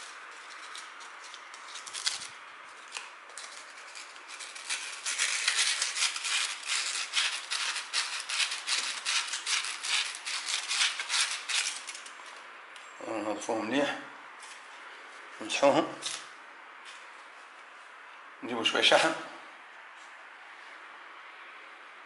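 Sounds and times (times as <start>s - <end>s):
sandpaper scrubbing metal parts: 3.5s - 12.1s.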